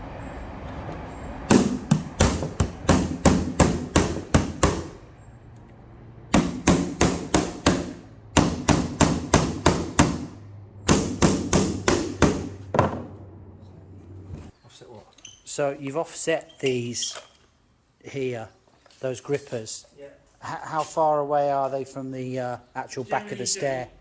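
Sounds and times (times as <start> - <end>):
hammer striking nails into wood: 1.5 - 5.0, 6.3 - 13.1.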